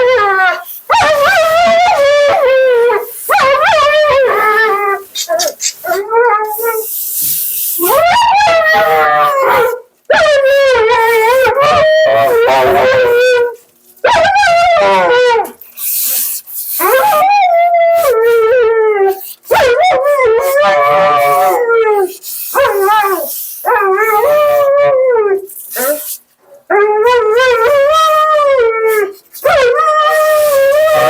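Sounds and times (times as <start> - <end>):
husky howling: 0.0 - 6.9, 7.8 - 15.6, 26.7 - 31.0
bursts of hiss: 4.7 - 8.0, 15.6 - 17.0, 22.1 - 23.7, 25.5 - 26.3.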